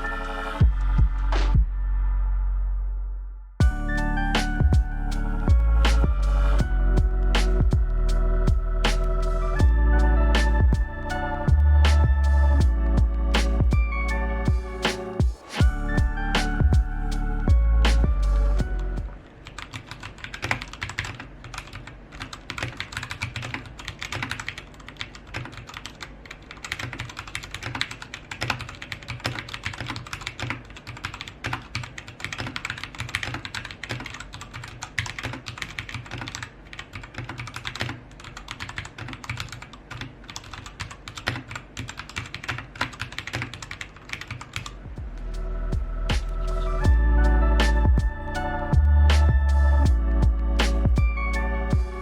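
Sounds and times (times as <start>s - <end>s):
mechanical keyboard typing: 19.4s - 44.8s.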